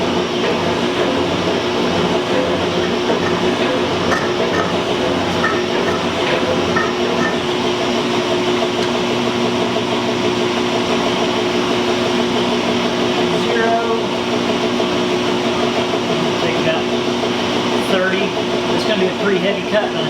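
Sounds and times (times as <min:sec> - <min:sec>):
metal shaper cutting steel: 0:02.5 - 0:07.6.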